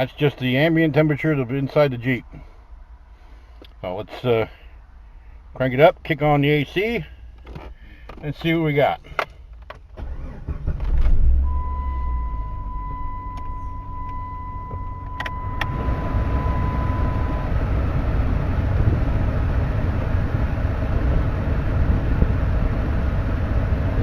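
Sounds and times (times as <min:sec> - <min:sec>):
car engine idling: 0:09.0 - 0:24.0
electronic beep tone: 0:11.4 - 0:17.5
blower fan rushing air: 0:14.1 - 0:24.0.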